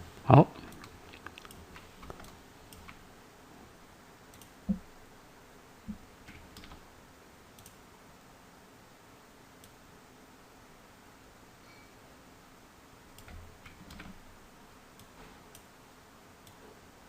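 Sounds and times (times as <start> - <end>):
computer mouse clicks: 0.6 - 3.0, 4.3 - 4.8, 5.9 - 6.8, 7.5 - 7.8, 13.2 - 14.2, 14.9 - 15.7.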